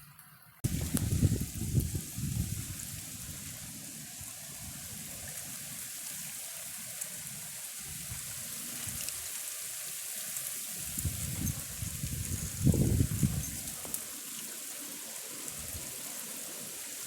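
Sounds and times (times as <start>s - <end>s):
wind buffeting microphone: 0.6s - 3.6s, 10.8s - 14.0s
heavy rain hiss: 0.6s - 17.0s.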